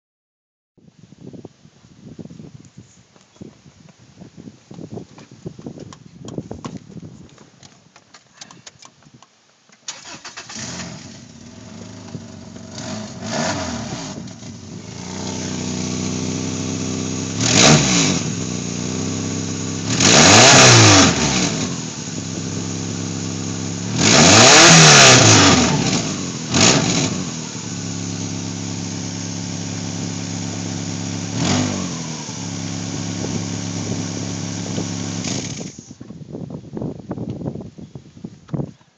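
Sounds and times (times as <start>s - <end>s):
car engine starting and revving: 9.9s - 36.0s.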